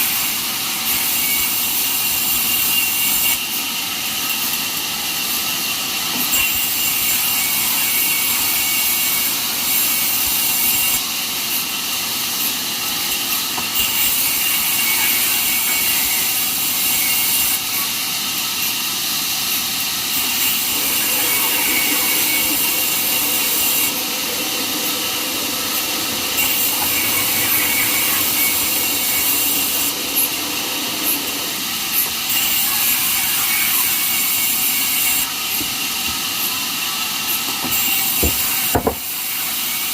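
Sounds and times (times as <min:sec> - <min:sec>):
band saw cutting log: 0:19.5 - 0:34.0.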